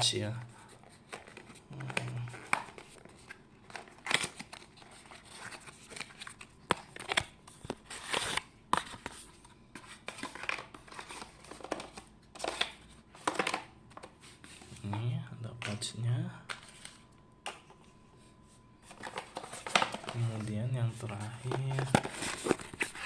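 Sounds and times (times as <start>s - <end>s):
packaging crinkling: 18.8s - 23.0s.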